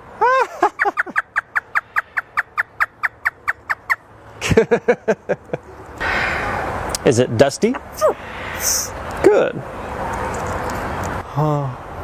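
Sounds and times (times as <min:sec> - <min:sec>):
parrot imitating laughter: 0:00.2 - 0:03.9.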